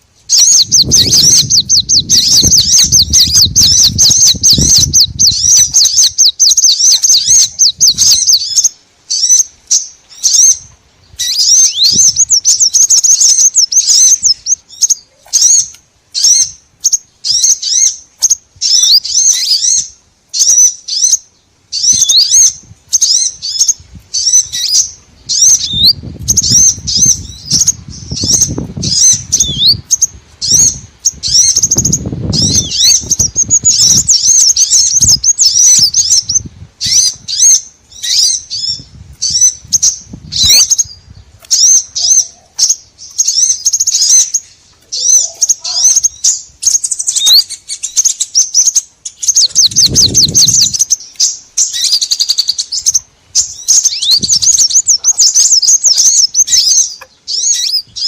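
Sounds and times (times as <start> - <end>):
songbirds chirping and twittering: 0.0 - 58.0.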